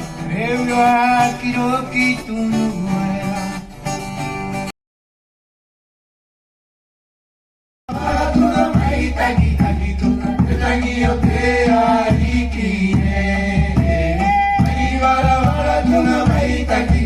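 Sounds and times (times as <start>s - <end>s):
instrumental accompaniment: 7.9s - 17.0s.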